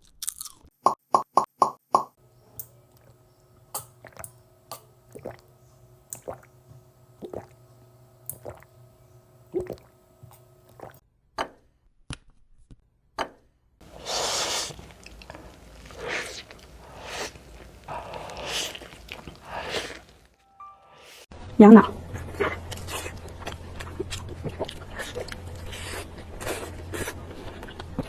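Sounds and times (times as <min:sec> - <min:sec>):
wet chewing: 0:02.2 - 0:11.0, 0:13.8 - 0:20.3
hissing bursts of noise: 0:13.8 - 0:20.2.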